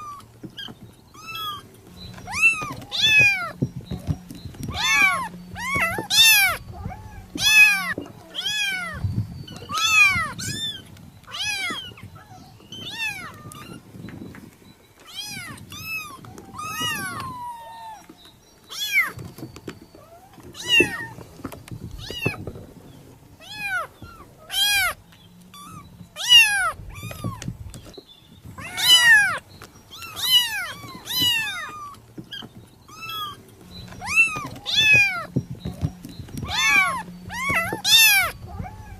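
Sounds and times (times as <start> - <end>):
kitten meowing: 2.2 - 3.6, 4.7 - 13.8, 15.1 - 18.1, 20.6 - 21.2, 23.4 - 27.5, 28.6 - 33.4, 34.0 - 35.3, 36.4 - 38.9.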